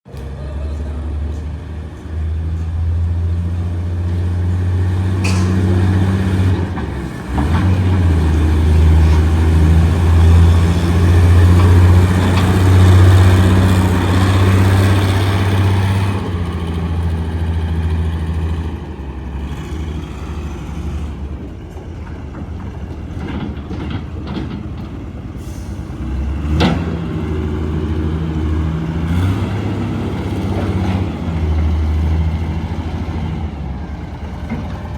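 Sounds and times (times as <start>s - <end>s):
excavator diesel engine running: 0.1s - 34.9s.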